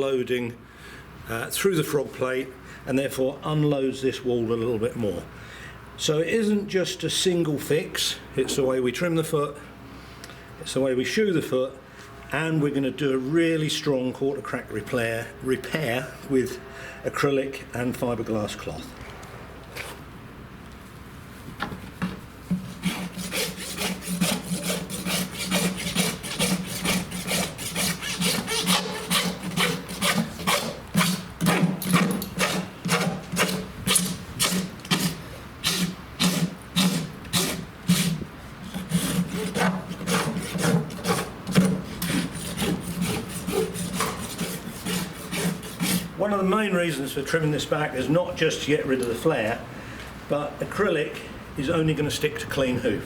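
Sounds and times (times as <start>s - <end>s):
rasp filing a hoof: 22.5s - 46.2s.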